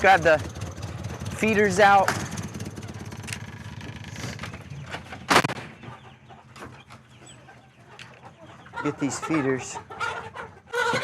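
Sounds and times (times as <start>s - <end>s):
utility vehicle engine idling: 0.0s - 5.3s
chickens clucking: 0.8s - 11.0s.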